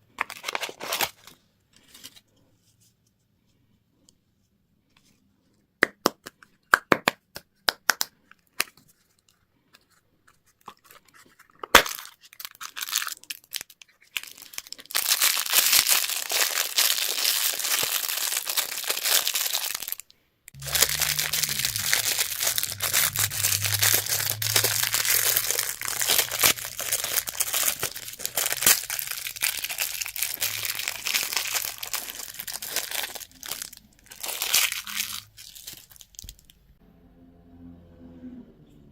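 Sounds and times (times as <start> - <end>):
wrapper tearing and crinkling: 0.2 - 2.2, 10.7 - 36.6.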